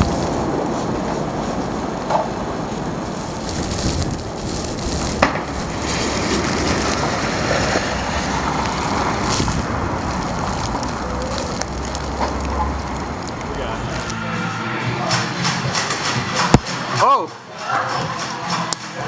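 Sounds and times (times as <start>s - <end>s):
blizzard wind on microphone: 0.0s - 14.7s.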